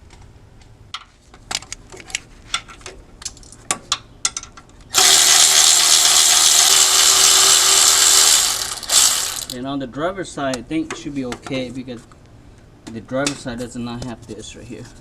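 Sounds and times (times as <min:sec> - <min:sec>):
cordless power tool running: 0:04.9 - 0:09.6.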